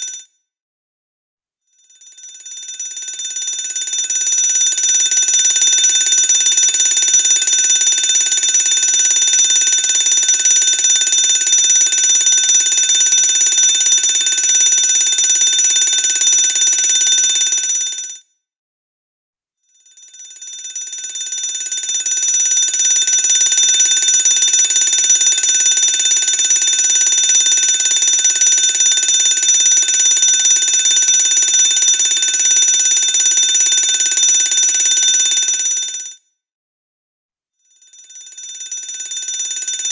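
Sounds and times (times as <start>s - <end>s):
fire alarm bell ringing: 4.8s - 17.7s, 22.6s - 35.7s.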